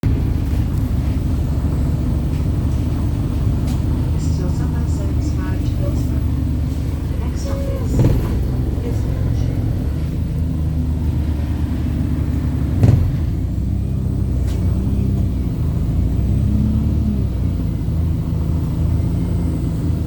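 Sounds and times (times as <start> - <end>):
bus diesel engine drone: 0.0 - 20.0
sharp knock: 12.8 - 13.4.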